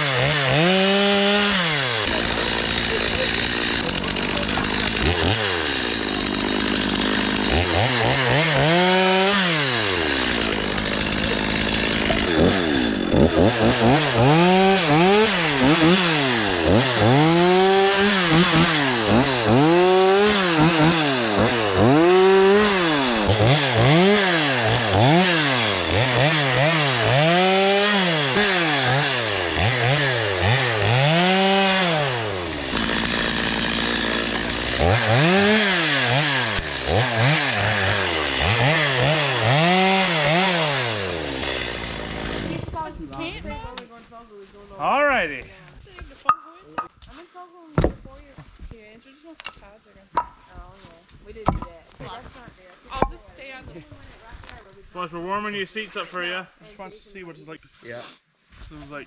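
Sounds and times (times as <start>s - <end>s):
chainsaw engine revving: 0.0s - 43.4s.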